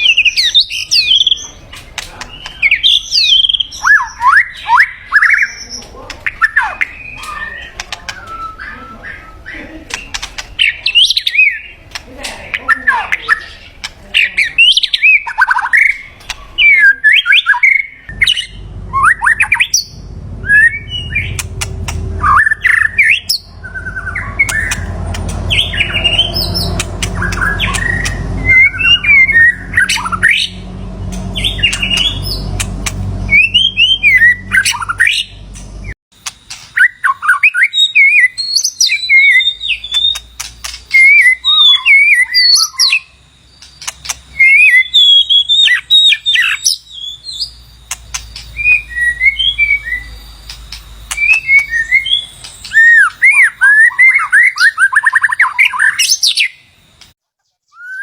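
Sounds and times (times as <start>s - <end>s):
bird singing: 0.0s - 58.0s
low rumble: 18.1s - 36.0s.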